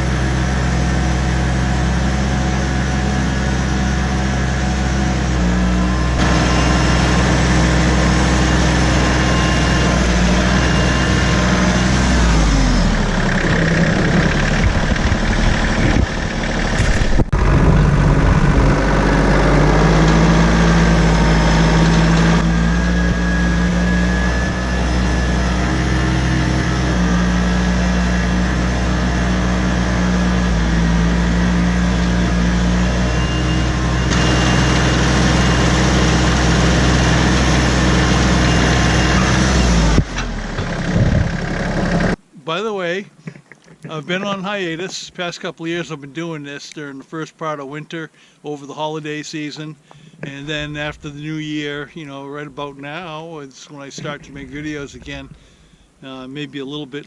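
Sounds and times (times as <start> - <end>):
tractor engine running: 0.0 - 42.4.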